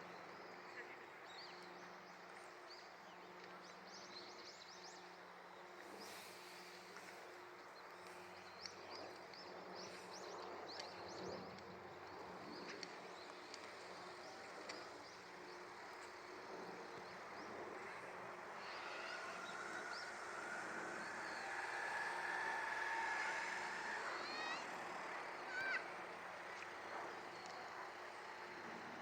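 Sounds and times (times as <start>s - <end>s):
small birds chirping: 8.1s - 29.0s.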